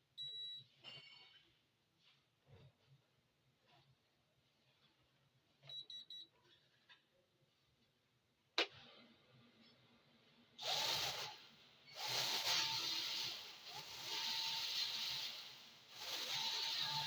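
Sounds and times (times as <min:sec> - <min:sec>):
toy drone propellers whirring: 0:10.6 - 0:11.3, 0:11.9 - 0:17.0.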